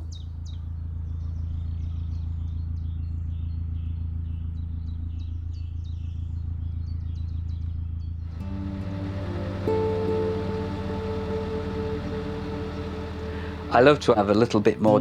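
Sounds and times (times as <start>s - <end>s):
bird two-note call: 8.4s - 14.3s
boat engine humming: 8.4s - 15.0s.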